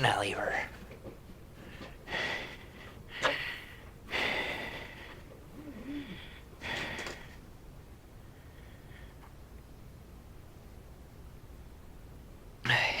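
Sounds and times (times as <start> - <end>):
man breathing hard through nose: 1.6 - 7.4.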